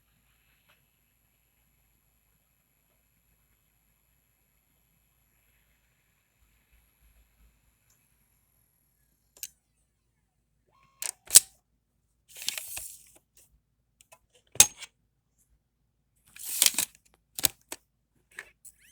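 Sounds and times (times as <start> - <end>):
brief sliding scrapes: 12.3 - 13.1, 14.6 - 14.9, 16.4 - 17.7.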